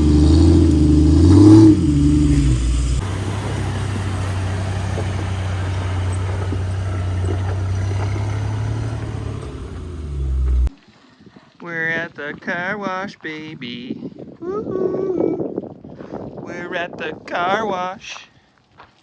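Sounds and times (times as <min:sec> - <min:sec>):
engine droning: 0:00.0 - 0:10.7
road noise: 0:00.0 - 0:10.7.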